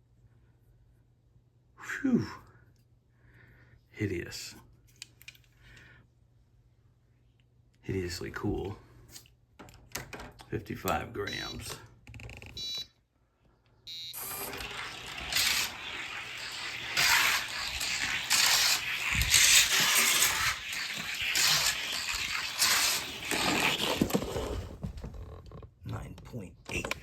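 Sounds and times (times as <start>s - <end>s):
toy car rattling on plastic track: 14.2s - 24.6s.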